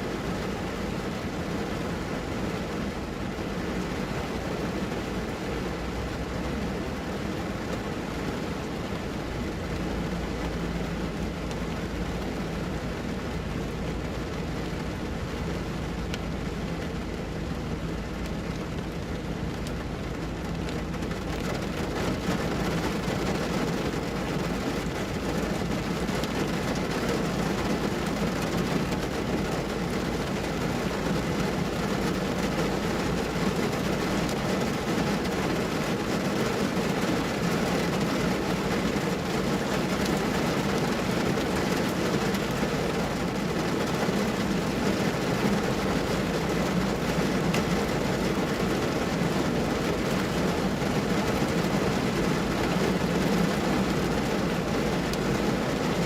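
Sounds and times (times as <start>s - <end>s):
heavy rain drumming on car roof: 0.0s - 56.0s.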